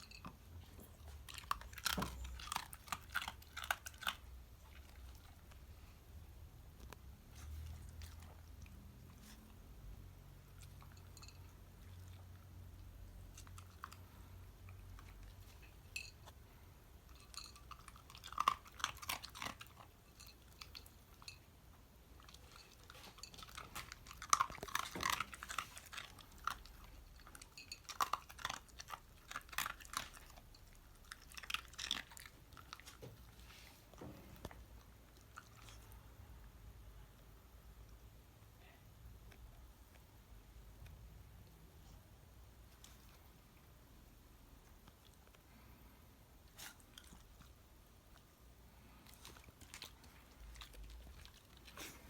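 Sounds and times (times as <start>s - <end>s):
dog chewing food: 0.1s - 5.9s, 7.1s - 9.6s, 17.1s - 21.5s, 22.1s - 36.0s, 46.4s - 52.0s.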